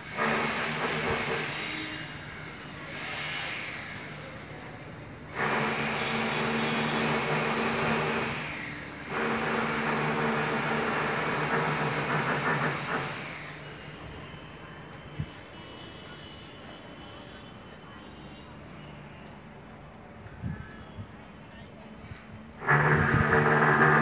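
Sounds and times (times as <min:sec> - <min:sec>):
vehicle mechanical hum: 0:13.2 - 0:24.0.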